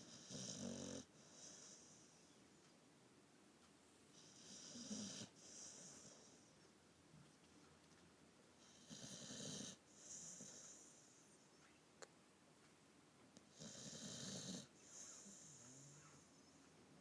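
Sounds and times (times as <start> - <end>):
dog snoring: 0.0 - 2.1, 4.1 - 6.3, 8.6 - 11.2, 13.5 - 16.5.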